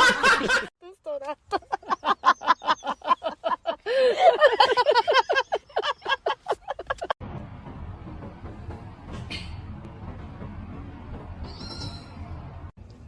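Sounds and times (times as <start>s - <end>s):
low background rumble: 7.0s - 13.0s.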